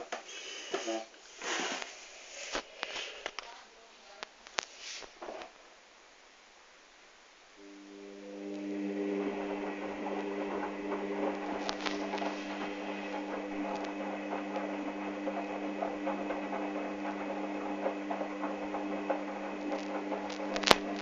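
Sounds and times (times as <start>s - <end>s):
washing machine motor hum: 7.6s - 21.0s.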